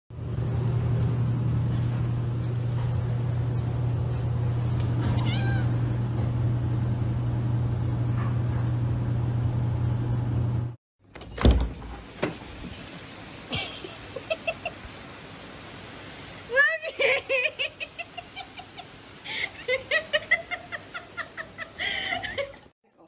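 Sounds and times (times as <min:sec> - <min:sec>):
cat meowing: 0:05.0 - 0:05.8.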